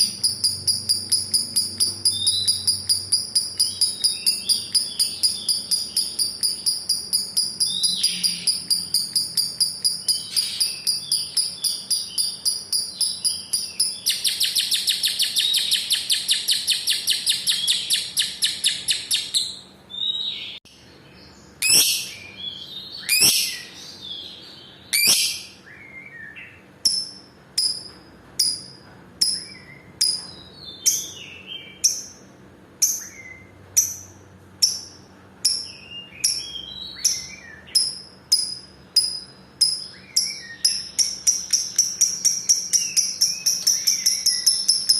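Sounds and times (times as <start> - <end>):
bird chattering trill: 0.0 - 20.6, 21.6 - 23.8, 24.9 - 25.7, 32.8 - 44.9
bird chirping: 0.0 - 44.9.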